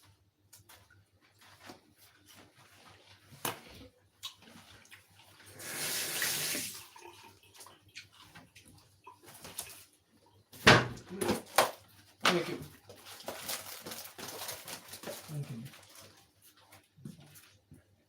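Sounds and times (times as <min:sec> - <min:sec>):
kitchen tap running: 0:05.4 - 0:08.2.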